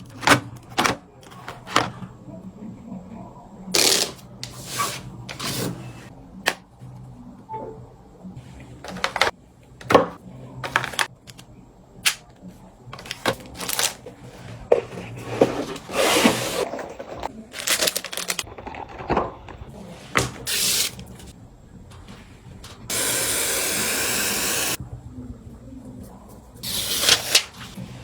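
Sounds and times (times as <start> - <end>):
rustling or scraping: 13.0 - 17.7.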